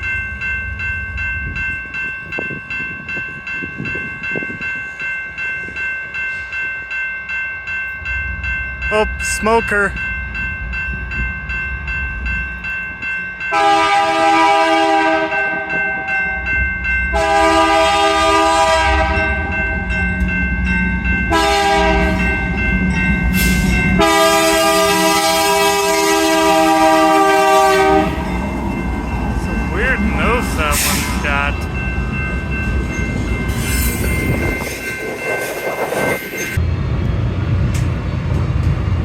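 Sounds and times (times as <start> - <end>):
locomotive engine rumbling: 8.1 - 39.0
locomotive air horn blasts: 13.5 - 15.7, 17.1 - 19.5, 21.3 - 22.3, 24.0 - 28.2.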